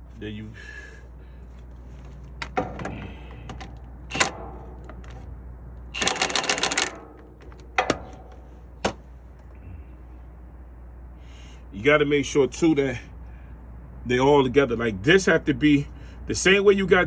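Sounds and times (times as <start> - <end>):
impact wrench hammering: 4.1 - 4.4, 6.0 - 6.9.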